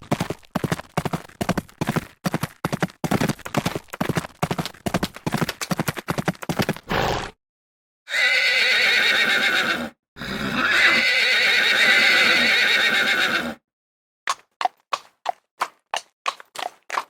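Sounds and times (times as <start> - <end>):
hooves clip-clopping: 0.0 - 6.9, 14.3 - 17.0
horse neighing: 8.1 - 13.6.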